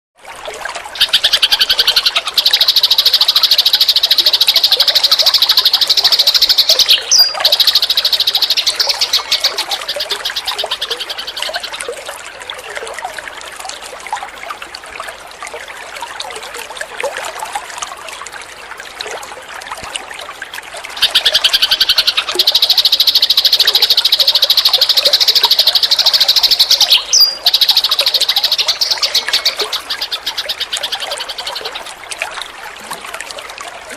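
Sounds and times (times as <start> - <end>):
sparrows chirping: 1.1 - 11.7, 21.0 - 31.8.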